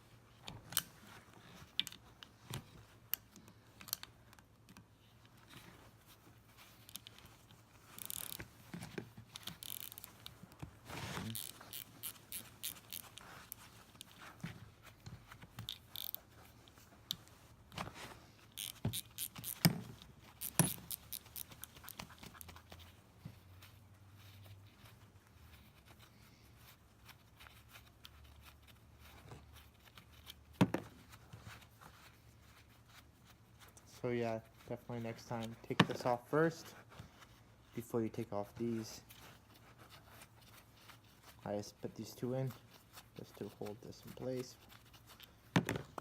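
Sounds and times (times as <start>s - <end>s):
metallic clicks of hand tools: 20.4s - 22.0s.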